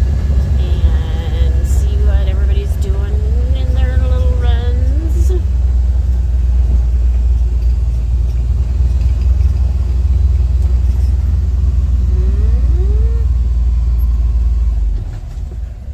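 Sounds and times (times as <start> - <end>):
utility vehicle engine running: 0.0 - 15.9
short rising and falling tones: 11.9 - 13.9.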